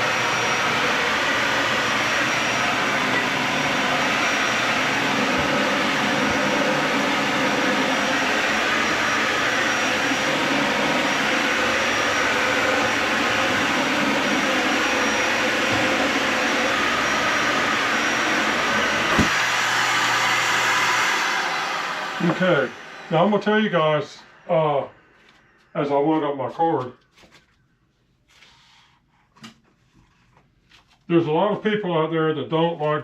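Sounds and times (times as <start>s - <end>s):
vacuum cleaner running on carpet: 0.0s - 24.8s.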